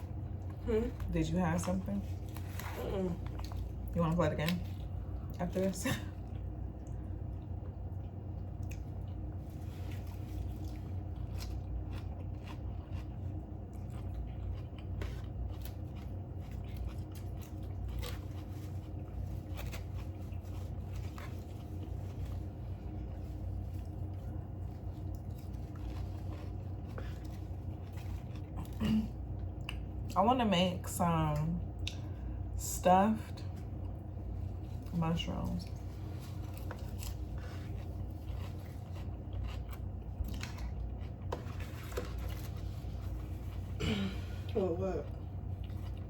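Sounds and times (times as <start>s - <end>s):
steady low hum: 0.0s - 46.0s
chewing and biting food: 6.2s - 30.2s, 33.7s - 43.8s, 45.0s - 46.0s
soft food crunches: 6.2s - 30.2s, 33.5s - 43.8s, 44.4s - 46.0s.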